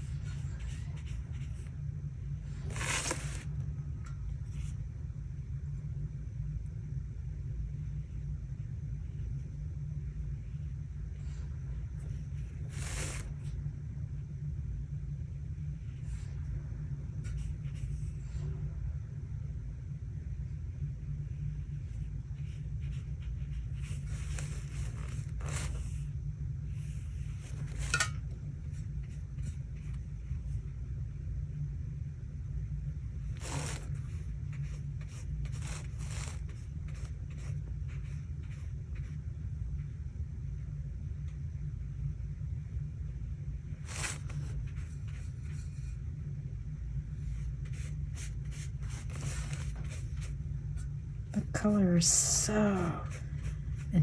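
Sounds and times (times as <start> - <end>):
steady low hum: 0.0 - 54.0
paintbrush stroking on paper: 2.5 - 3.6, 33.2 - 39.2, 43.8 - 46.0, 47.2 - 54.0.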